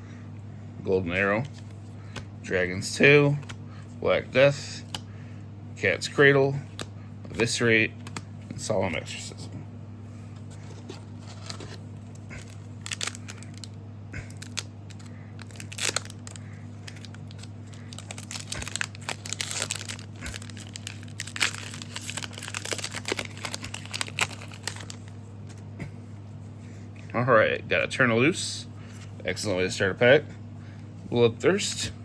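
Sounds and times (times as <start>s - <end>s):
steady low hum: 0.0s - 32.0s
foil pack crinkling and tearing: 11.2s - 25.1s.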